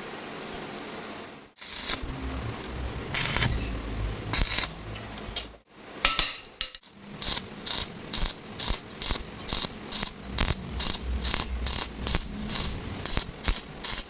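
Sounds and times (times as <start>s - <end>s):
rhythmic mechanical clicking: 6.8s - 14.0s.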